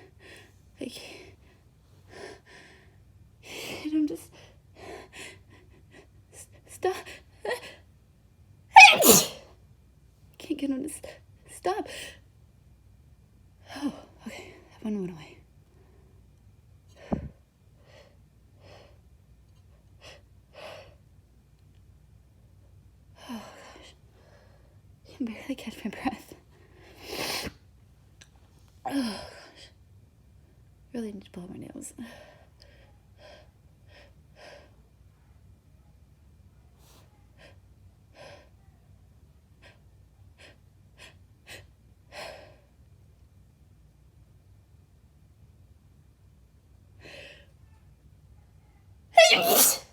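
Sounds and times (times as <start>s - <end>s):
woman breathing and sniffing: 49.2s - 49.9s.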